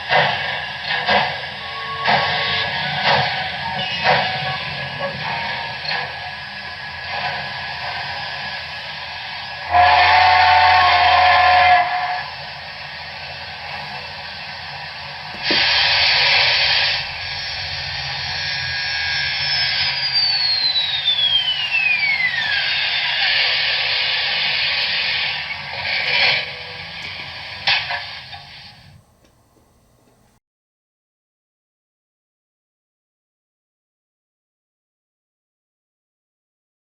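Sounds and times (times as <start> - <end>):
chime steam whistle: 0.0 - 13.2, 15.4 - 28.9
loud burst of steam hiss: 0.0 - 29.0
steady steam hissing: 0.0 - 29.0
high tone sliding downward: 15.4 - 25.6.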